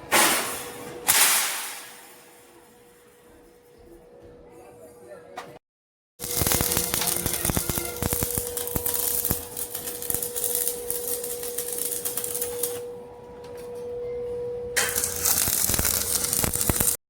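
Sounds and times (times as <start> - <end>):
welding arc crackling: 6.2 - 12.8, 14.8 - 17.0.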